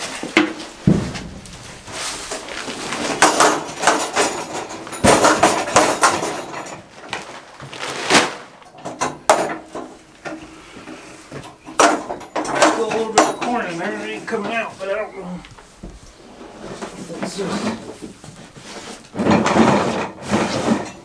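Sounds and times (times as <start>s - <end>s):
metal clanks of feeder mechanism: 0.2s - 6.9s, 8.7s - 14.6s.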